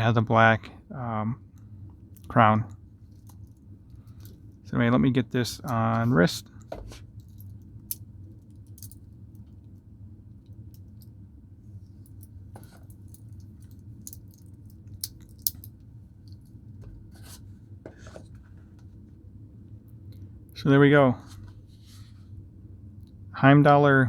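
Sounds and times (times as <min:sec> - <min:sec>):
low room tone hum: 0:00.0 - 0:24.0
watch band clicks and rustles: 0:07.1 - 0:09.6, 0:12.0 - 0:16.5.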